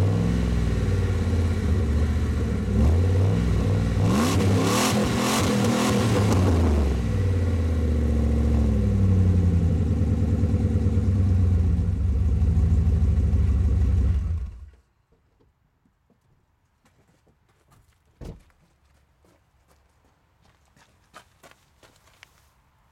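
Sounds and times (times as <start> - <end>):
car engine revving and idling: 0.0 - 14.7.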